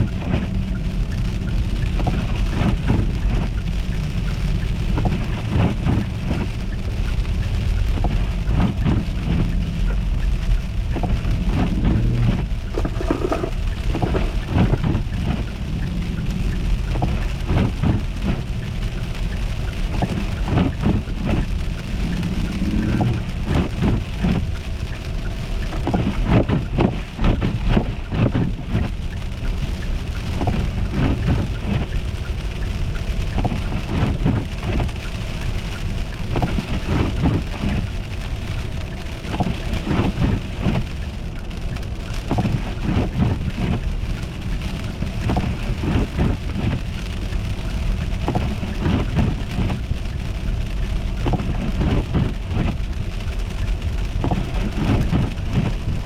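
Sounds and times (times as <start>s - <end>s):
car tyres rumbling on road: 0.0s - 56.0s
ice and snow crunching: 11.0s - 15.4s.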